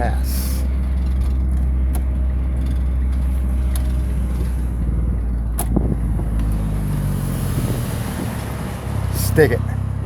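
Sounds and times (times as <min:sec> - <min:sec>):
car engine and road noise: 0:00.0 - 0:10.0
sharp click: 0:05.5 - 0:05.8.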